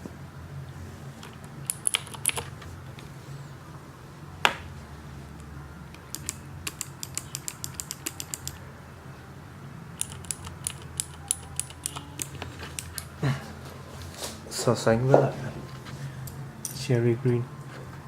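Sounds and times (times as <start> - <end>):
mechanical keyboard clicks: 1.2 - 2.5, 5.9 - 8.6, 10.0 - 13.1.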